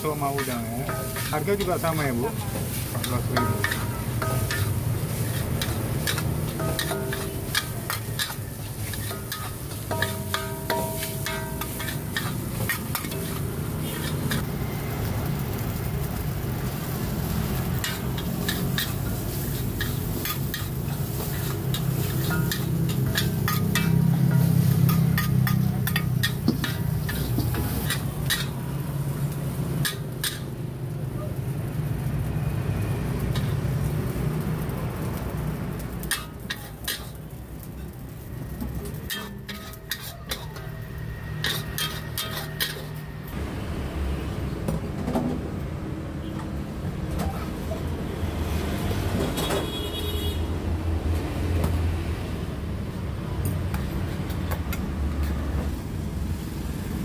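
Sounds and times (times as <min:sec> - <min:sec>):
metal spatula scraping a wok: 0:00.0 - 0:14.7, 0:17.5 - 0:30.6, 0:36.0 - 0:43.4
road traffic rumble: 0:00.0 - 0:57.0.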